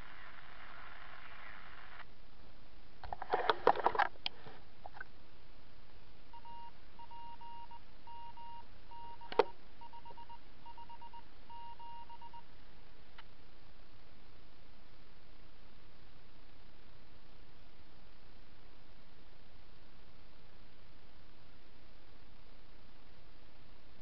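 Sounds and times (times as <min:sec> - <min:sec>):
radio hiss: 0:00.0 - 0:02.1
morse code beeping tone: 0:06.4 - 0:12.4.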